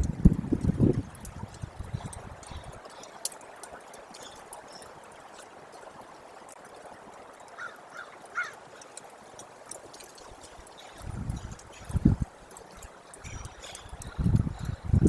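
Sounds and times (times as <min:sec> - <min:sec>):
meltwater trickling: 0:00.0 - 0:15.0
water drips: 0:00.0 - 0:15.0
bird calls: 0:07.5 - 0:08.9, 0:13.2 - 0:14.1.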